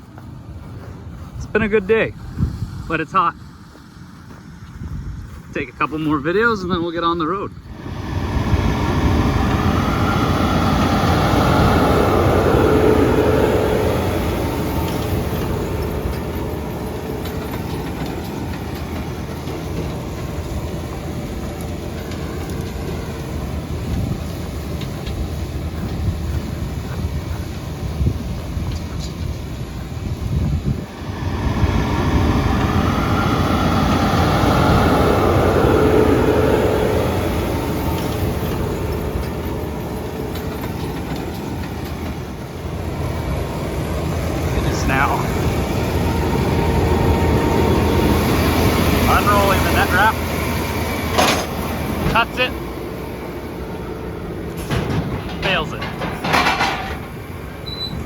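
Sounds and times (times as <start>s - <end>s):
tractor and baler rumbling: 0.0s - 58.0s.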